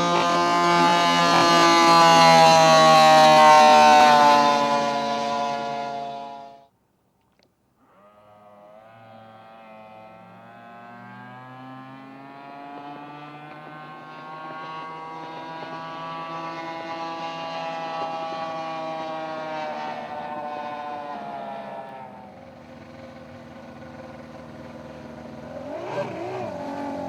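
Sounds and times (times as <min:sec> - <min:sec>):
aircraft engine running: 0:00.0 - 0:06.6, 0:14.0 - 0:27.0.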